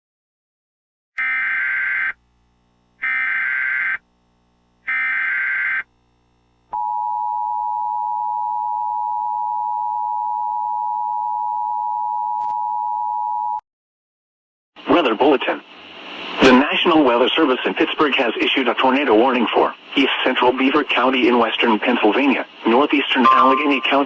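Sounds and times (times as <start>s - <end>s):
buzzing data bursts: 1.2s - 6.7s
two-tone attention signal: 6.8s - 13.6s, 23.2s - 24.0s.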